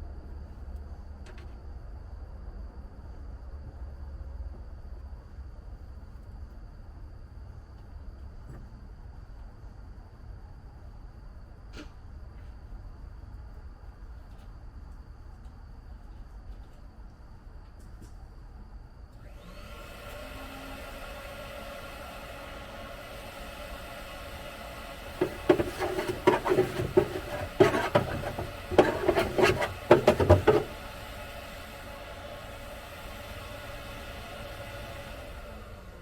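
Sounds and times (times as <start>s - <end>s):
loud knocks and rattles: 25.2s - 30.8s.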